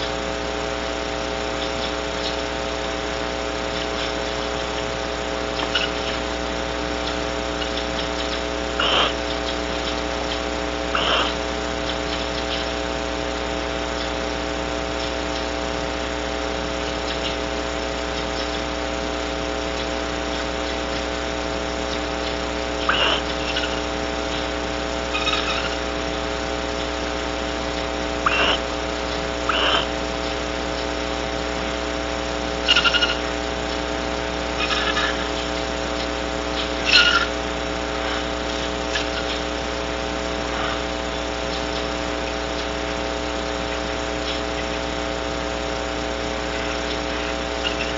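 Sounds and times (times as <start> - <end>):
electrical hum: 0.0 - 47.9
owl short calls: 5.6 - 6.2, 7.5 - 9.6, 10.9 - 11.4, 22.2 - 24.5, 25.1 - 26.0, 28.2 - 28.7, 29.4 - 30.0, 32.6 - 33.3, 34.6 - 35.5, 36.5 - 39.5, 40.4 - 41.0, 46.5 - 47.9.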